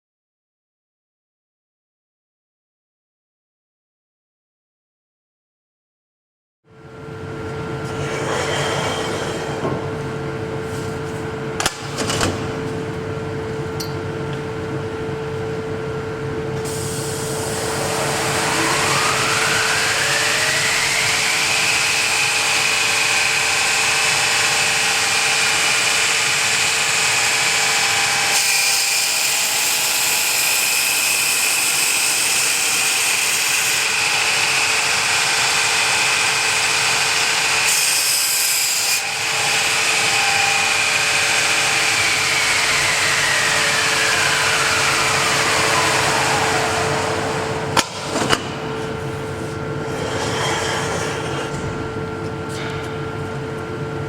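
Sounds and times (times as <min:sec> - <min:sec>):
steady machine hum: 0:06.7 - 0:28.4, 0:39.0 - 0:54.0
grinder belt drive whine: 0:11.4 - 0:38.0, 0:39.0 - 0:54.0.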